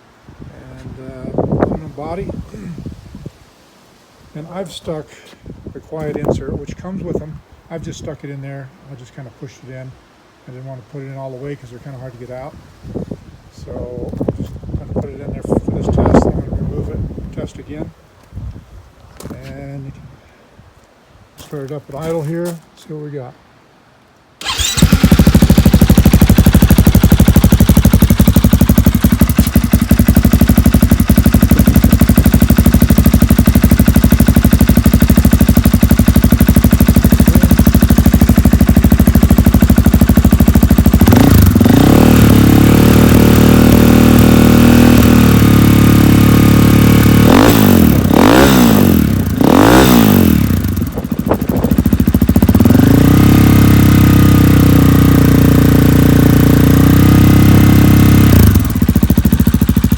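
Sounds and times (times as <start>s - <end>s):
motorcycle engine idling and revving: 24.4s - 59.9s.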